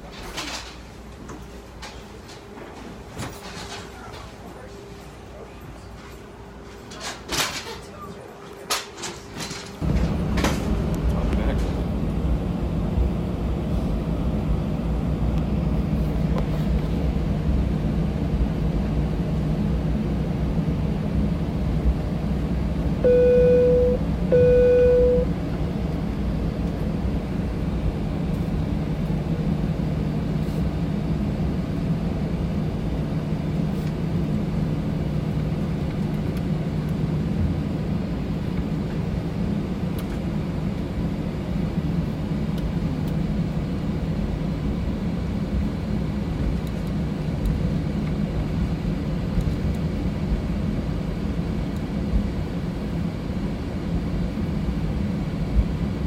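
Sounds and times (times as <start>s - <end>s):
airliner cabin hum: 0.0s - 56.0s
electronic beeps: 23.0s - 25.3s.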